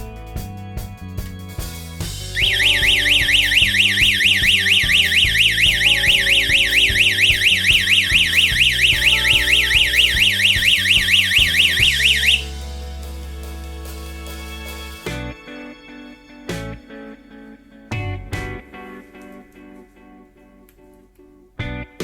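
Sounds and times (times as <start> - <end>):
electronic siren warbling: 2.4 - 12.5.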